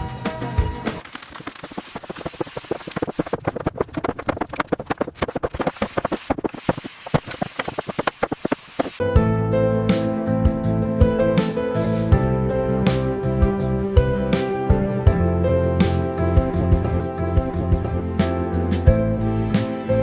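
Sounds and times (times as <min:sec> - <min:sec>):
rapid crackle of small clicks: 0:01.0 - 0:09.0.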